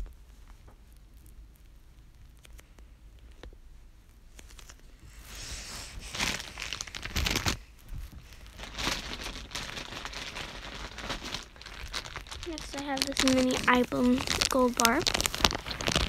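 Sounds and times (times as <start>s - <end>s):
plastic packaging crinkling: 4.3s - 16.0s.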